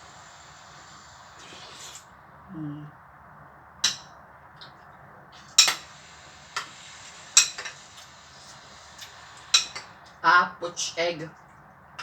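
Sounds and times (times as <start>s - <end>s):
utensils clinking against a bowl: 5.5s - 5.9s, 7.4s - 7.8s, 9.0s - 10.2s.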